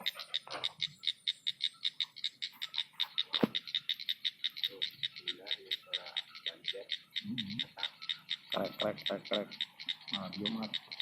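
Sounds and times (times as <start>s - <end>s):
frogs calling: 0.0s - 11.0s.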